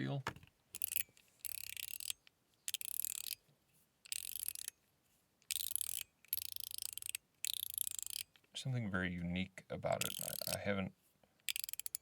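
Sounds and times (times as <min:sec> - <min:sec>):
metal fidget slider clicking: 0:00.8 - 0:03.4, 0:04.0 - 0:04.8, 0:05.4 - 0:08.3, 0:10.0 - 0:10.6, 0:11.4 - 0:12.0.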